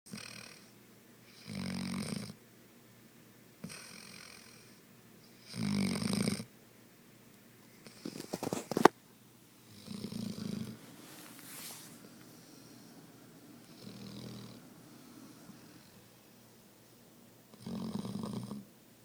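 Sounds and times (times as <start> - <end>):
pet snoring: 0.1 - 2.4, 3.6 - 4.8, 5.4 - 6.5, 9.7 - 16.0, 17.5 - 18.7
soft breath: 10.1 - 17.0.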